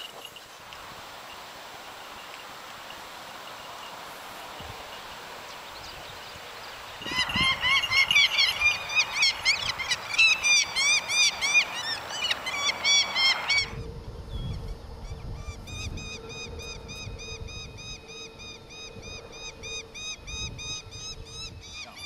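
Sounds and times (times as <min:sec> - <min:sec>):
falcon calling: 0:07.0 - 0:13.8.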